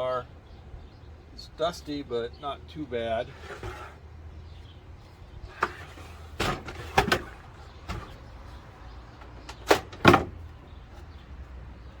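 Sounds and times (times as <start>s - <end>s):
computer case knocks and clunks: 9.6s - 10.4s.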